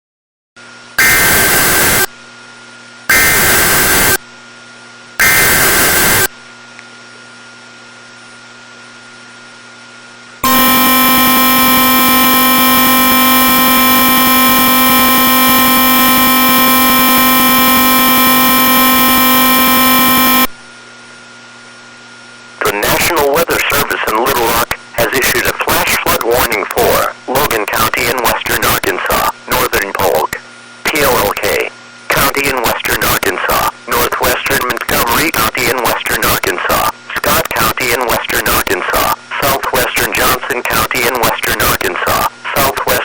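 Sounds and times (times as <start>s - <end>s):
loud steady alarm tone: 1.0s - 2.1s, 3.1s - 4.2s, 5.2s - 6.3s, 10.4s - 20.5s
screeching data tones: 1.0s - 2.1s, 3.1s - 4.2s, 5.2s - 6.3s, 10.4s - 20.5s.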